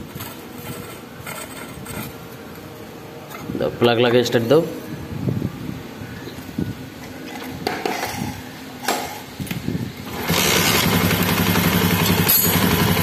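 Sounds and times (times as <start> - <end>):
motorcycle engine running: 10.1 - 13.0
metal clinks and knocks: 12.0 - 12.7.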